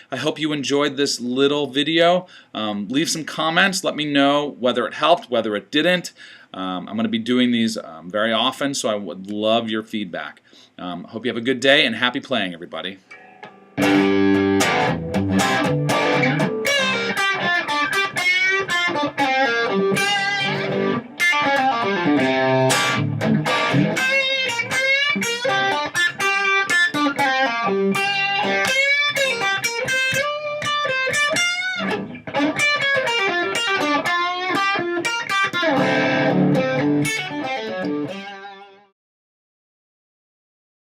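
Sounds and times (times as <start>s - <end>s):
electric guitar lead lines: 13.1s - 38.9s.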